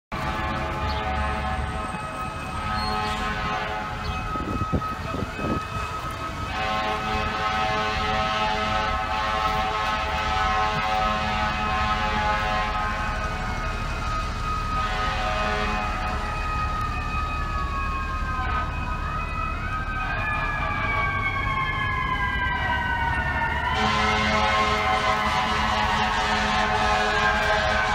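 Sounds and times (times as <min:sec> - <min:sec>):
low traffic rumble: 0:00.1 - 0:27.9
wailing siren: 0:00.1 - 0:27.9
air horn blasts: 0:00.3 - 0:04.1, 0:06.5 - 0:13.4, 0:14.7 - 0:16.3, 0:23.7 - 0:27.9.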